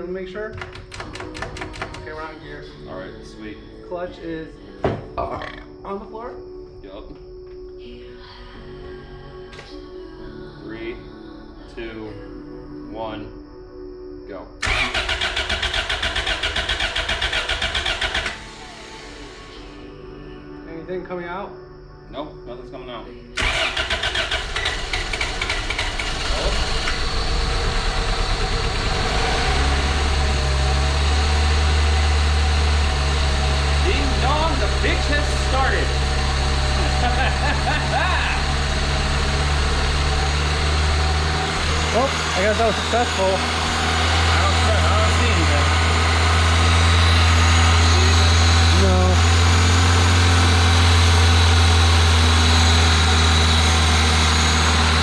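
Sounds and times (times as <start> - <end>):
car engine cranking and starting: 0.5 - 2.3, 14.6 - 19.9, 23.4 - 55.0.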